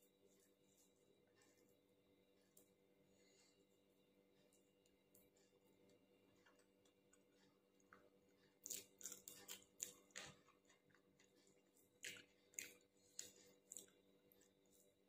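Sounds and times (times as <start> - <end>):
person chewing rice: 3.5 - 15.0.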